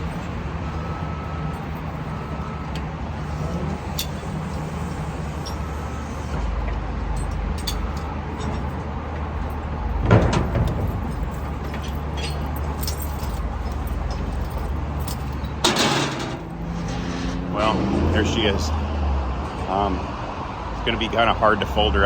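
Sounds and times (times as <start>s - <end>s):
low mechanical hum: 0.0s - 21.3s
rough bump: 9.9s - 12.8s, 15.6s - 17.5s.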